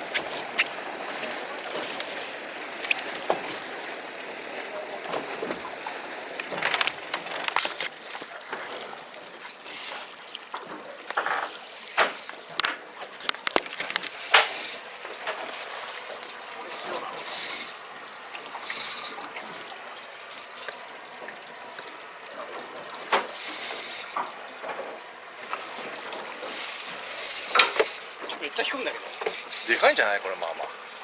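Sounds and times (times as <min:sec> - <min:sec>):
water sloshing against boat hull: 0:00.0 - 0:31.0
fishing tackle clicks and knocks: 0:06.3 - 0:08.4, 0:11.1 - 0:15.4, 0:16.3 - 0:19.5, 0:20.3 - 0:21.0, 0:25.6 - 0:28.4.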